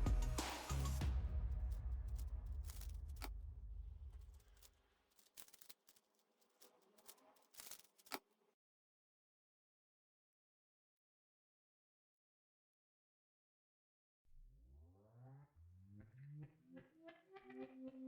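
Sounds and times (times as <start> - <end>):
background music: 0.0 - 2.8
speed cube clicking: 6.9 - 8.2.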